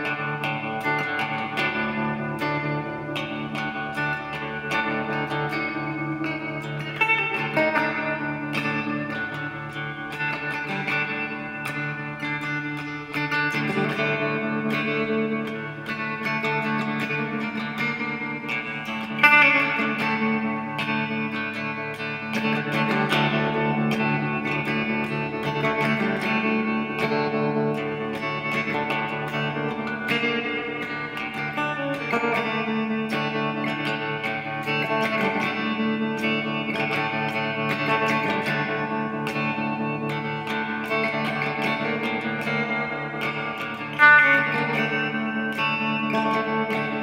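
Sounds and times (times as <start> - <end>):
guitar with effects: 0.0 - 47.0.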